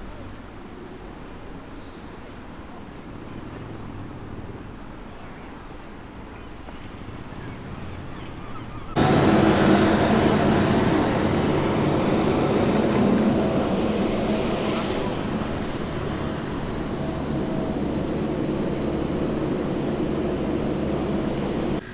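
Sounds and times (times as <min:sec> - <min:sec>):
close engine drone: 0:03.2 - 0:21.9
heavy diesel machinery rumble: 0:06.7 - 0:21.9.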